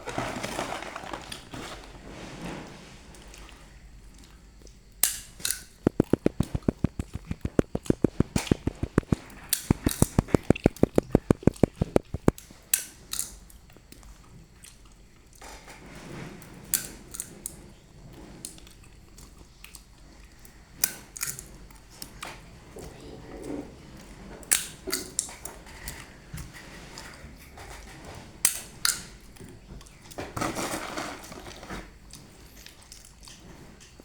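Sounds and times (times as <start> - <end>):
rapid sharp knocks: 5.9 - 12.4.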